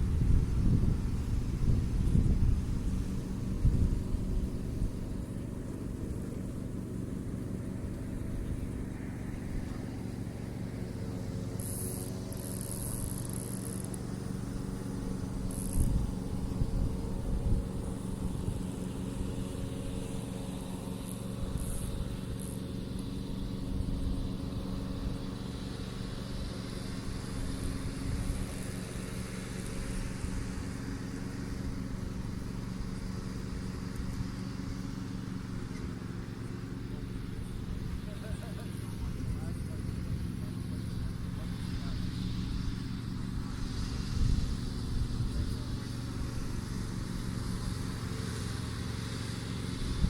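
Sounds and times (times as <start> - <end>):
low motor hum: 0.0 - 50.0.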